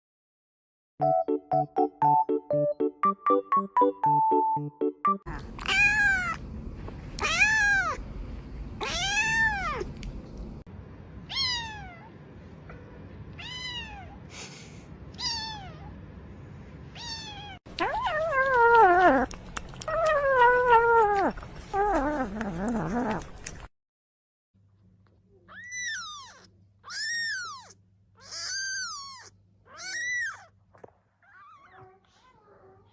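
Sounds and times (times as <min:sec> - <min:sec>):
kitten meowing: 0:05.3 - 0:06.4, 0:07.2 - 0:08.0, 0:08.8 - 0:09.9, 0:11.3 - 0:12.1, 0:13.4 - 0:14.2, 0:15.2 - 0:15.9, 0:17.0 - 0:19.2, 0:25.5 - 0:30.5.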